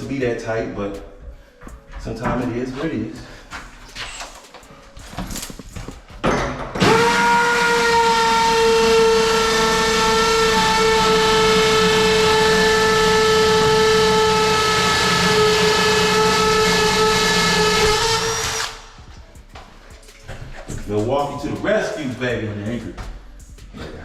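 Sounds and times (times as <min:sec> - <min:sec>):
power drill whining: 0:06.8 - 0:18.9.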